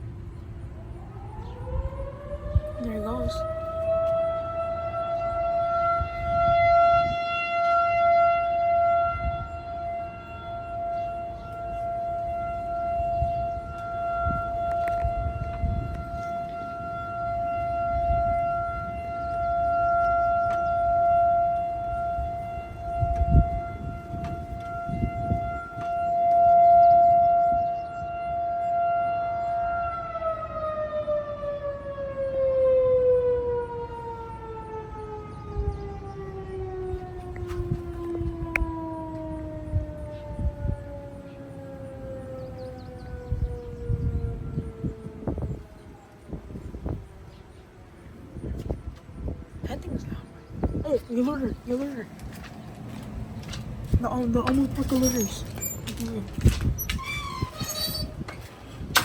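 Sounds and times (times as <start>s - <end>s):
tornado warning siren: 0.0s - 59.0s.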